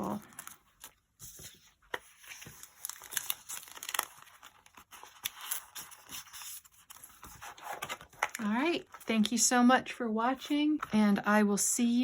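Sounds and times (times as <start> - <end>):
paper rustling and crinkling: 0.0 - 9.3.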